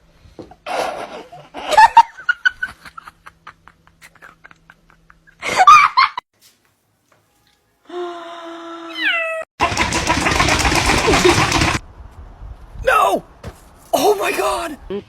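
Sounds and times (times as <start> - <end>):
person laughing: 0.7 - 6.2, 14.0 - 15.0.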